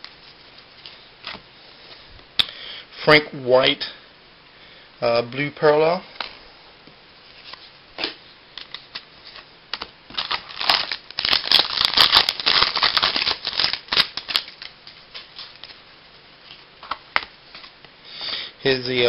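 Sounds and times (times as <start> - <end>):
cards and packaging crackling: 7.5 - 15.8.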